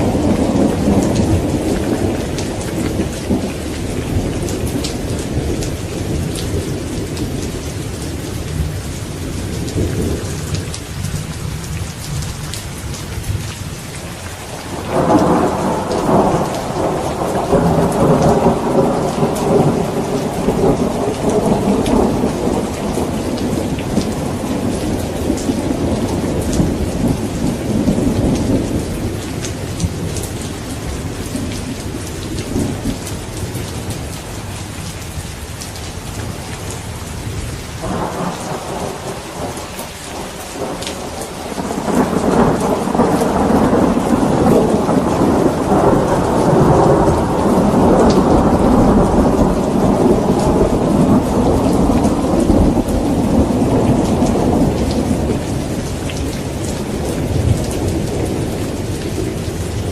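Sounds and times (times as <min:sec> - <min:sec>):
rolling thunder: 0:00.0 - 0:11.2, 0:14.6 - 0:34.6, 0:36.2 - 0:59.9
steady rain: 0:00.0 - 0:59.9
loud thunder peal: 0:37.8 - 0:55.6.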